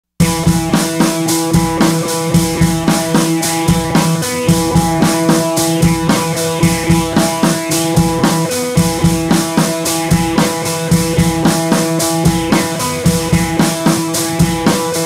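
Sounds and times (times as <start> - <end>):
music with steady drum beat: 0.2 - 15.0.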